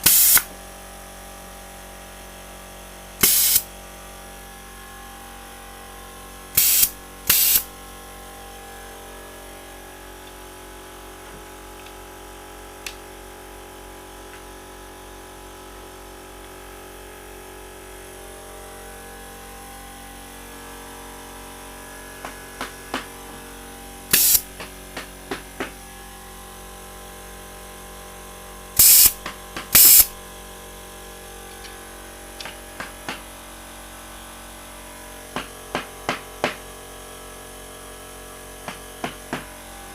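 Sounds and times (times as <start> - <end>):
pneumatic nail gun firing: 0.0 - 0.5, 3.2 - 3.7, 6.6 - 7.7, 24.1 - 25.7, 28.8 - 30.2
steady hum: 2.9 - 14.5, 17.2 - 33.8.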